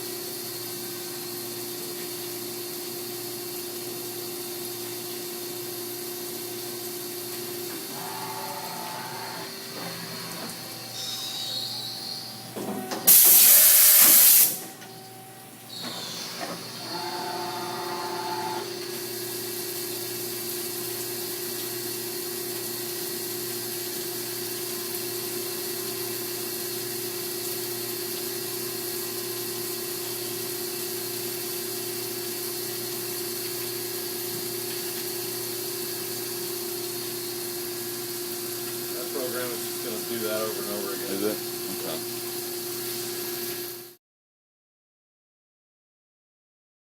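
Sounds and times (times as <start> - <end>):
very loud machine hiss: 0.0 - 14.8, 15.7 - 44.0
milling machine steady tone: 4.7 - 13.3, 14.6 - 34.3, 35.1 - 44.0.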